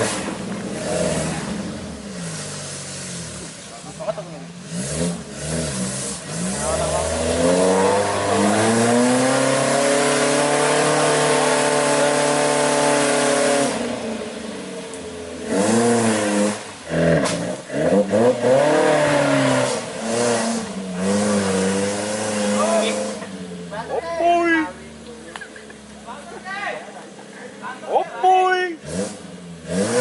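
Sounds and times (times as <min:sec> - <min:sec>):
jeep engine revving: 0:00.0 - 0:26.5, 0:28.5 - 0:30.0.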